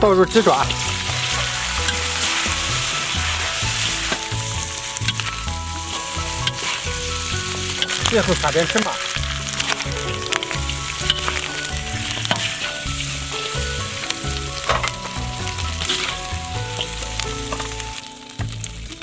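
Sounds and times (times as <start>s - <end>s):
background music: 0.0s - 19.0s
food sizzling in hot oil: 0.0s - 19.0s.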